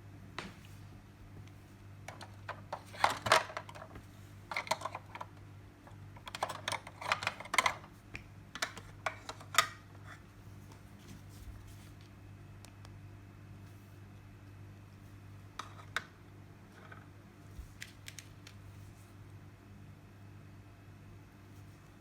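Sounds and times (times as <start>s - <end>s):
plastic toy pieces clicking: 6.2s - 7.8s.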